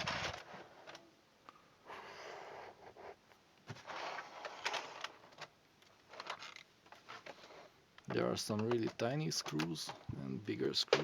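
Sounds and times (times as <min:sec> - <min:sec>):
light clicks and knocks: 0:05.3 - 0:11.0.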